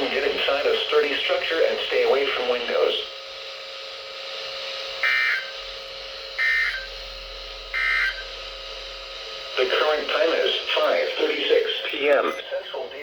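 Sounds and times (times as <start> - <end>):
harsh buzzing data bursts: 4.8 - 13.0.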